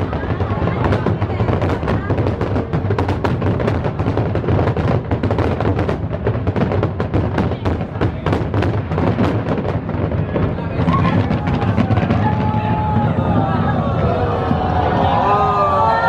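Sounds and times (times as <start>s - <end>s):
fireworks booming and crackling: 0.0s - 16.0s.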